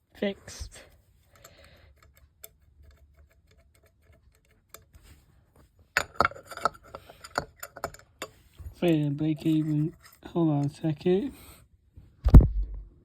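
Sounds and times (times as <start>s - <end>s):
metal clattering and tapping: 1.2s - 11.4s.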